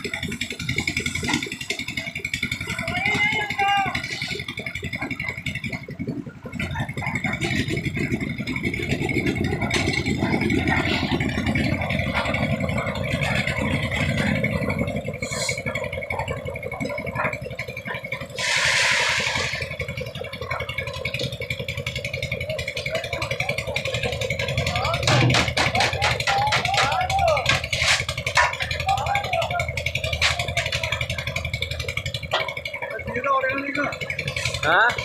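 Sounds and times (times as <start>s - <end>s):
concrete mixer engine running: 0.0s - 35.0s
loud hiss: 18.4s - 19.7s.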